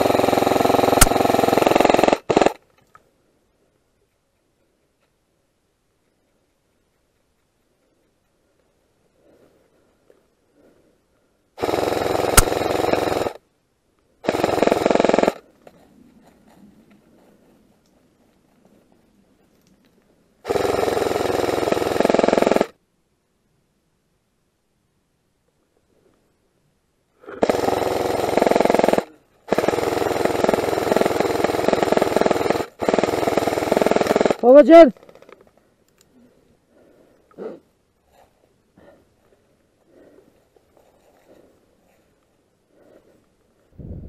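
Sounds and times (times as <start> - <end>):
airsoft gun firing full auto: 0.0 - 2.6, 11.6 - 13.4, 14.2 - 15.4, 20.4 - 22.8, 27.4 - 34.9.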